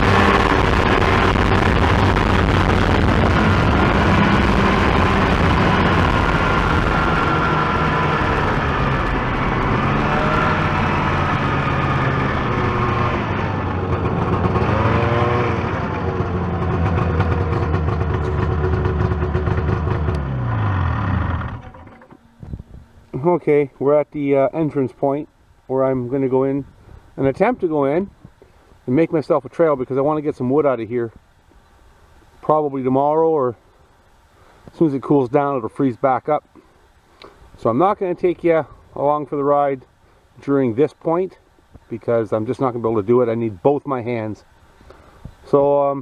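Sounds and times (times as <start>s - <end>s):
snowmobile engine revving: 0.0s - 22.1s.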